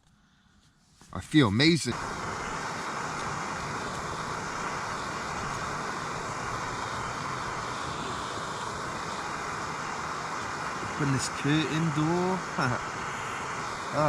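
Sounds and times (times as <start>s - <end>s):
strong wind against tent: 1.9s - 14.0s.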